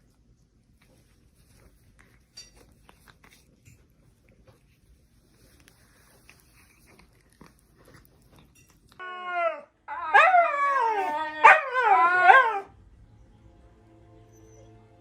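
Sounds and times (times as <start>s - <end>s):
dog howling and whining: 9.0s - 12.7s.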